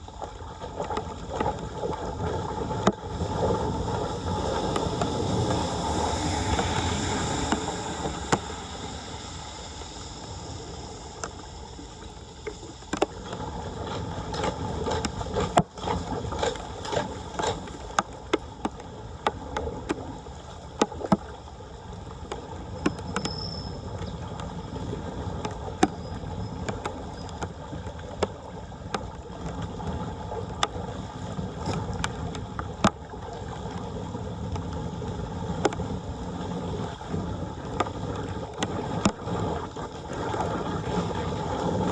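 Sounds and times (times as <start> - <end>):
water gurgling into a drain: 0.0 - 41.9
sharp clicks and knocks: 12.4 - 13.2.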